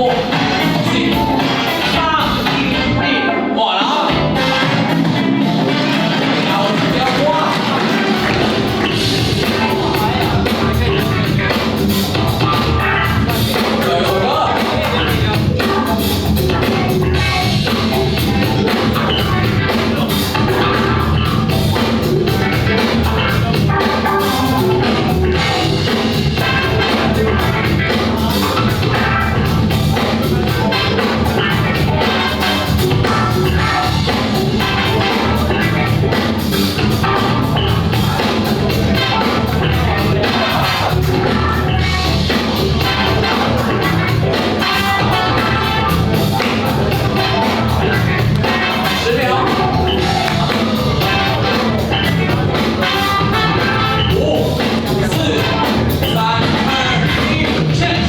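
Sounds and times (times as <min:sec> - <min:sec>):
dance music with drums and singing: 0:03.6 - 0:58.0.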